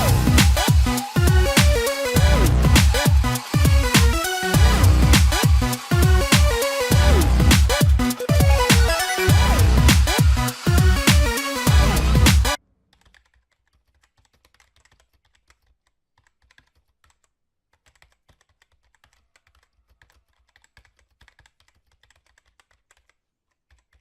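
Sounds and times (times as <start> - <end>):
electronic dance music: 0.0 - 12.6.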